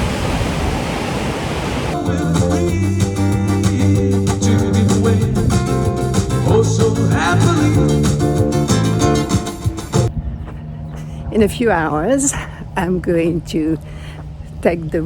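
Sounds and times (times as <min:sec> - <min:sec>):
steady rushing noise: 0:00.0 - 0:02.0
music with plucked guitar and beat: 0:02.0 - 0:10.1.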